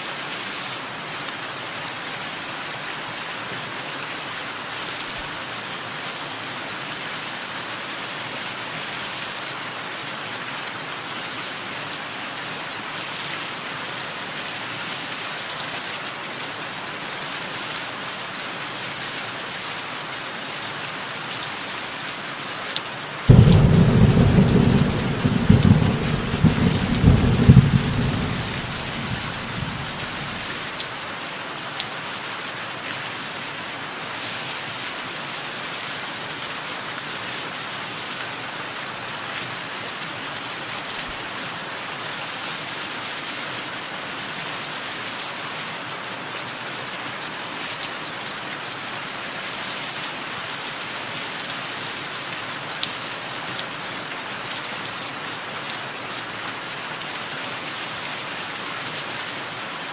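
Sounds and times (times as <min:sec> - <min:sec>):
steady rain falling: 0:00.0 - 0:59.9
birds chirping: 0:23.3 - 0:30.6
thunder rumble: 0:23.3 - 0:30.7.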